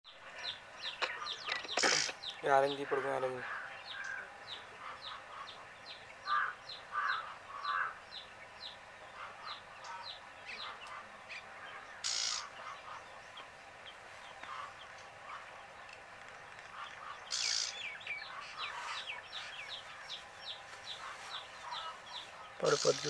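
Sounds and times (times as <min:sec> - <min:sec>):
rustling hiss: 0:00.2 - 0:23.0
chicks peeping: 0:16.7 - 0:23.0.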